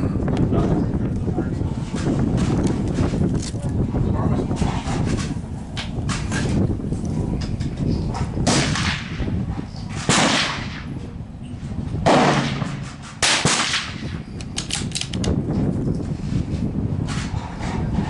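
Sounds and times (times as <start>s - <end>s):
wind rumbling on microphone: 0.0s - 18.0s
rifle shots: 8.4s - 9.3s, 10.0s - 10.9s, 12.0s - 14.9s.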